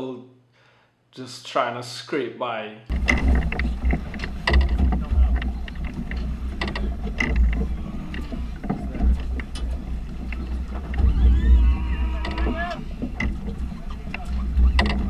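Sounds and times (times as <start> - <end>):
boat low rumble: 2.9 - 15.0
clicks and knocks: 2.9 - 15.0.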